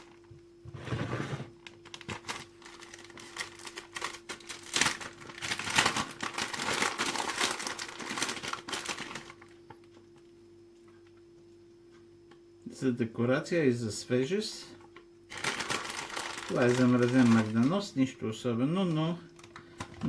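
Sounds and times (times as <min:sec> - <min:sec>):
frozen parsley crackling: 0:01.8 - 0:09.5, 0:15.3 - 0:17.9.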